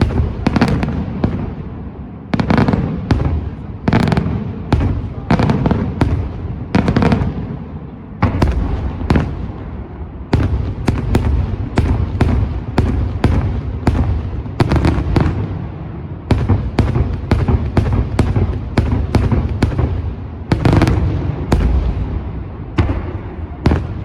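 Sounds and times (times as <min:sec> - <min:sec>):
fireworks bangs: 0:00.0 - 0:24.0
low rumbling echo: 0:00.0 - 0:24.0.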